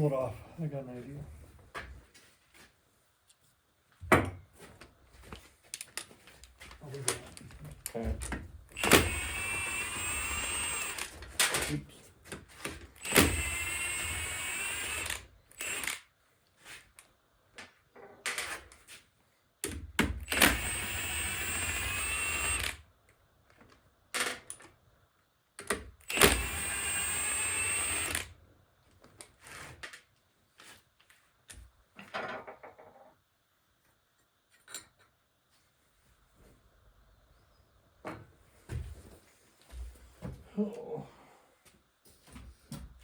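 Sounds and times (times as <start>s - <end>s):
power tool whining: 8.8s - 11.1s, 13.0s - 16.0s, 20.3s - 22.8s, 26.1s - 28.3s.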